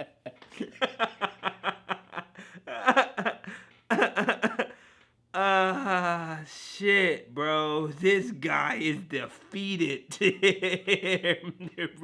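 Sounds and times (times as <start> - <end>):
man laughing hard: 0.0 - 4.8, 10.2 - 12.0.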